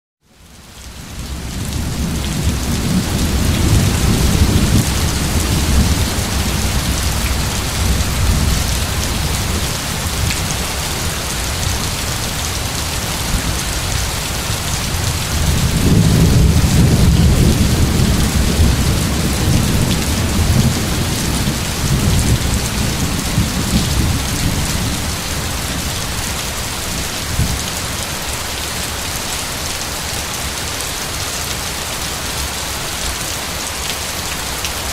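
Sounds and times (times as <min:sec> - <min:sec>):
steady rain falling: 0:00.2 - 0:34.9
low thunder rolling: 0:01.3 - 0:10.3, 0:14.9 - 0:26.0.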